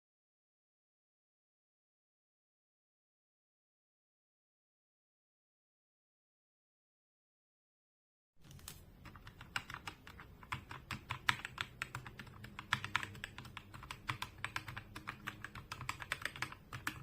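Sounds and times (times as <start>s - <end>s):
mechanical keyboard typing: 8.4s - 17.0s.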